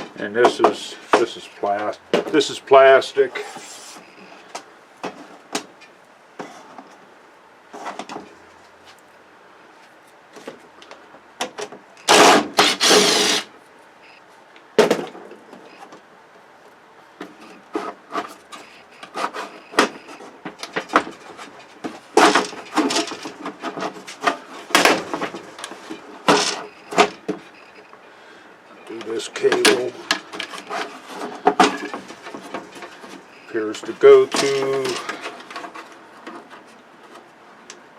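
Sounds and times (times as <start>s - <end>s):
parts scraping: 0.0s - 7.0s, 7.7s - 9.1s, 9.8s - 14.2s, 17.2s - 28.0s, 28.7s - 37.9s
plastic parts clicking and knocking: 18.5s - 27.4s.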